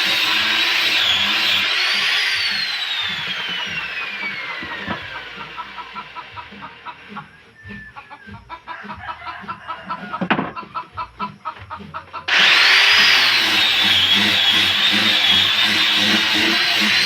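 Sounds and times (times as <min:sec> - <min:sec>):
chickens clucking: 0:04.5 - 0:12.4.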